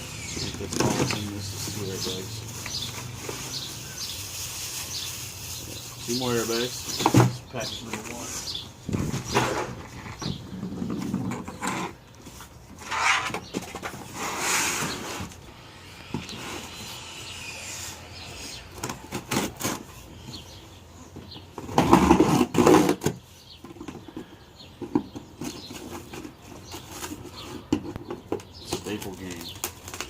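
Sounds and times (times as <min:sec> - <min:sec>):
cardboard box rustling and scraping: 0:00.2 - 0:15.4.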